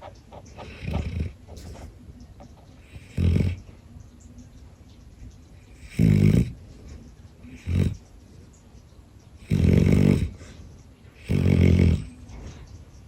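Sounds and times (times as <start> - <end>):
dog snoring: 0.5 - 1.5, 2.8 - 3.6, 5.7 - 6.6, 7.4 - 8.0, 9.4 - 10.5, 11.1 - 12.3.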